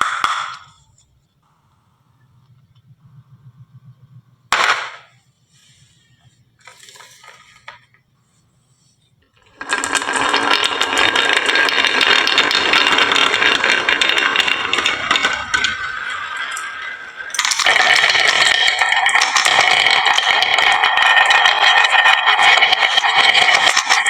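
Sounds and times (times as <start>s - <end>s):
marble clacking: 0.0s - 1.0s, 4.6s - 5.2s, 6.6s - 8.1s, 9.3s - 24.0s
marbles rattling down track: 6.6s - 8.0s, 9.4s - 24.0s.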